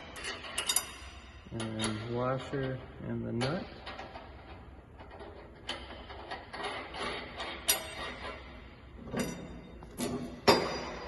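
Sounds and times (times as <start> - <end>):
metal nut and washer clinking: 0.0 - 2.8, 3.4 - 11.0.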